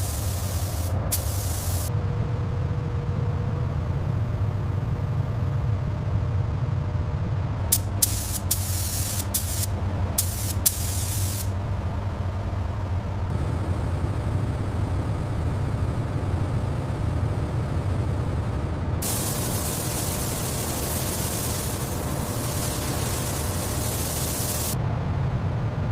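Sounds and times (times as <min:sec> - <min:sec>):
spraying hiss: 0:00.0 - 0:01.9, 0:07.7 - 0:11.5, 0:19.0 - 0:24.8
low machine hum: 0:00.0 - 0:25.9.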